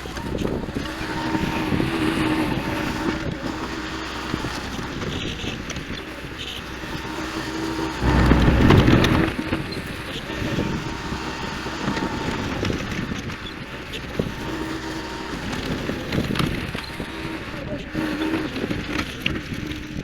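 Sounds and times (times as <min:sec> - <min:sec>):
tractor engine running: 0:05.6 - 0:09.6
wind on microphone: 0:08.0 - 0:09.8.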